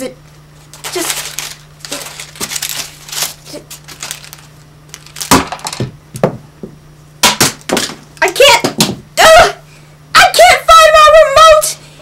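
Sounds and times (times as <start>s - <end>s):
low electrical hum: 0.0s - 12.0s
rustling and rummaging: 0.5s - 5.9s
quick thumps and knocks: 5.3s - 9.1s.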